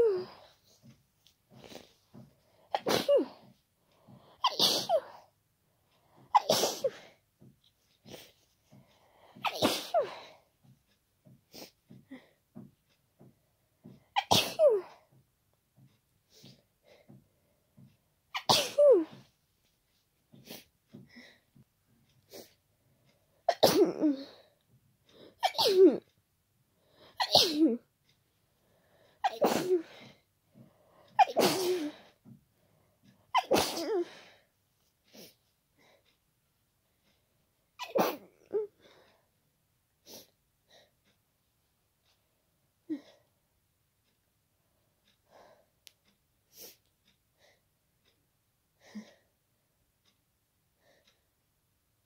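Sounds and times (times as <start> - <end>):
person sneezing: 2.8 - 3.5, 4.4 - 5.2, 6.4 - 7.1, 9.4 - 10.4, 14.2 - 14.9, 18.4 - 19.2, 29.2 - 30.0, 31.2 - 32.0.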